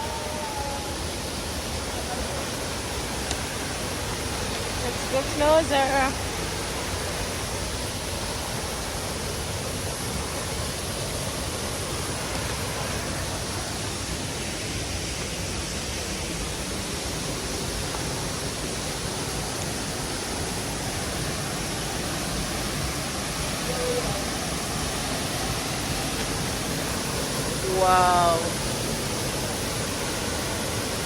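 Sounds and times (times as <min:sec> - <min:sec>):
waterfall rushing: 0:00.0 - 0:31.0.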